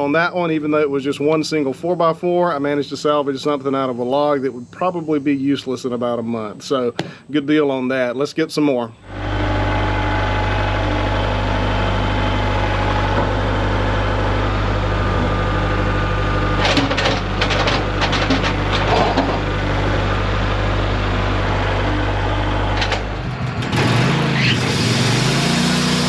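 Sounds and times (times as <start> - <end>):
engine idling and revving: 9.0 - 26.0
clanks and knocks: 16.6 - 19.5, 22.7 - 24.0.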